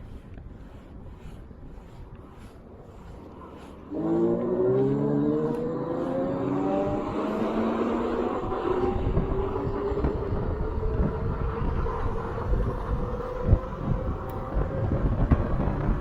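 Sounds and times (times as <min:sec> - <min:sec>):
vehicle engine accelerating: 0:03.8 - 0:16.0.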